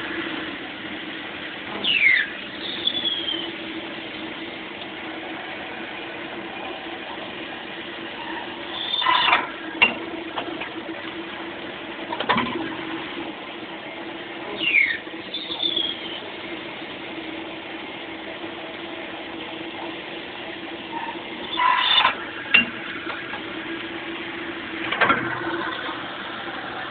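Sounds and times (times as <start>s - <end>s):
machine squeals: 1.8s - 3.6s, 8.1s - 9.5s, 14.5s - 16.2s, 20.9s - 22.2s.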